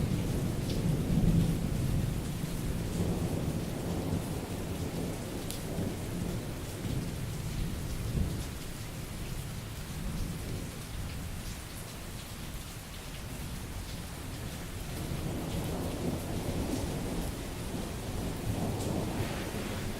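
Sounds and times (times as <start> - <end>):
steady rain falling: 0.0 - 19.9
rolling thunder: 15.1 - 19.9.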